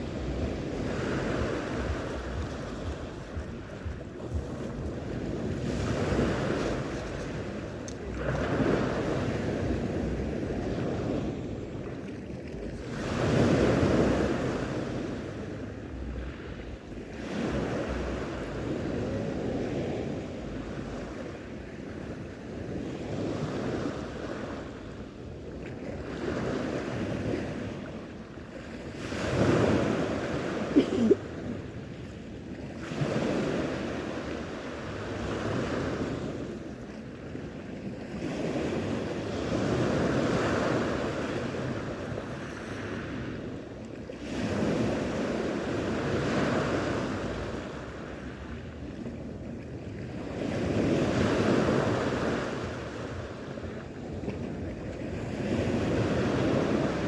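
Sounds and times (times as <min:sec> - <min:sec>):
wind buffeting microphone: 0:00.0 - 0:28.2
sea waves washing ashore: 0:00.0 - 0:57.0.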